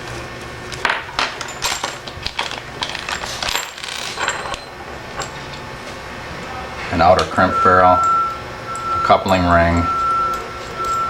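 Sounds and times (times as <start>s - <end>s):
metal parts clinking: 1.2s - 5.5s.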